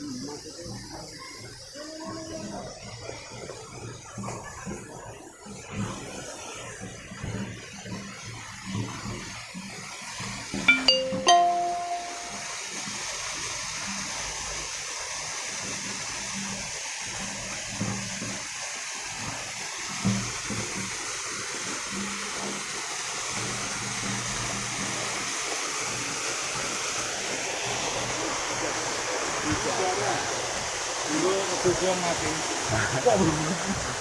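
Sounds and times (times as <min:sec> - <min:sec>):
waterfall rushing: 0:10.6 - 0:12.6, 0:14.7 - 0:34.0.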